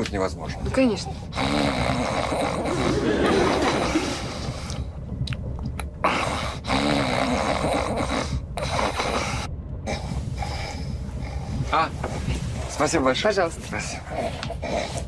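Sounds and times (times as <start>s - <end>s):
person snoring: 1.4s - 4.7s, 6.0s - 9.3s
train compartment rumble: 2.0s - 15.0s.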